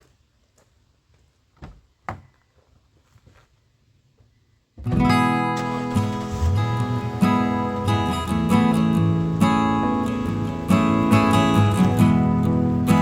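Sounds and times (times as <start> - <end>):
acoustic guitar strumming: 4.8 - 13.0.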